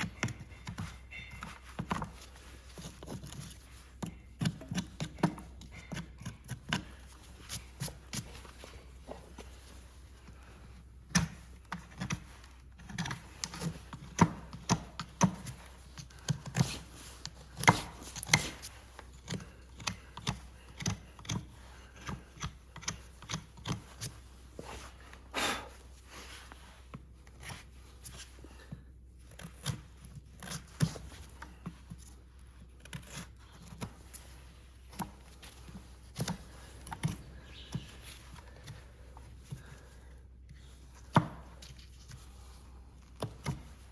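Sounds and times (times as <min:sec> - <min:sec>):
hoof trimming clicks and scrapes: 0:00.0 - 0:25.3, 0:26.5 - 0:43.9.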